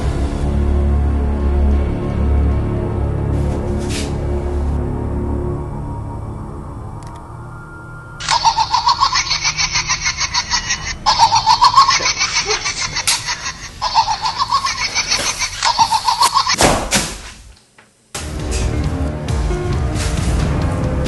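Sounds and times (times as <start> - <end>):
high-pitched cackling laughter: 8.2 - 16.6.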